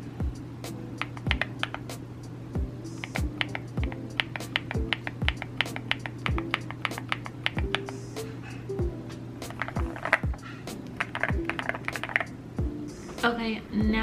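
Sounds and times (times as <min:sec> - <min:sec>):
background music with steady beat: 0:00.0 - 0:14.0
mechanical keyboard typing: 0:01.0 - 0:01.8, 0:03.0 - 0:08.0, 0:09.5 - 0:12.3.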